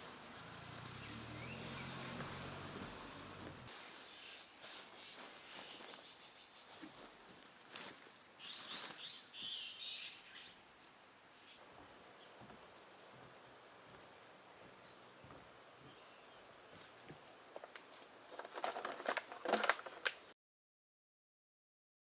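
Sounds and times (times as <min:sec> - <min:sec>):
rustling and clicking handling noises: 0:03.7 - 0:06.0, 0:16.8 - 0:20.3.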